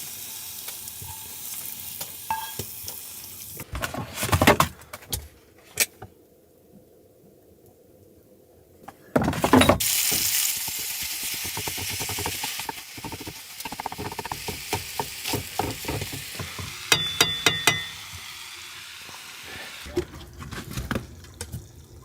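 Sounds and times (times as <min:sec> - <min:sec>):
food sizzling in a hot pan: 0:00.0 - 0:03.6, 0:09.8 - 0:19.9.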